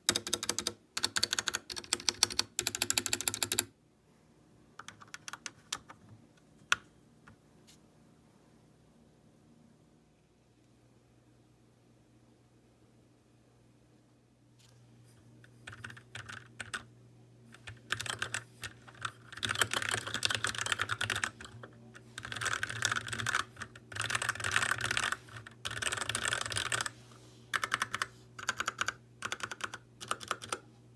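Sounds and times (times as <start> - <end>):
mechanical keyboard typing: 0.0 - 3.7, 4.8 - 6.0, 15.6 - 16.9, 17.5 - 30.6.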